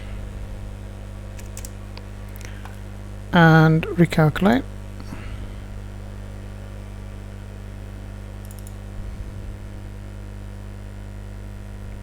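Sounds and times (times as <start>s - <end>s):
electrical mains hum: 0.0s - 12.0s
computer mouse clicks: 1.4s - 2.8s, 8.4s - 8.8s.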